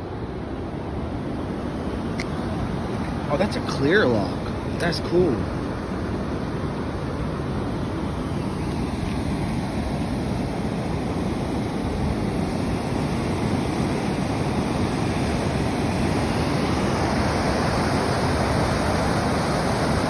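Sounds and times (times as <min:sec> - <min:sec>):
falling water rushing: 0:02.0 - 0:06.2.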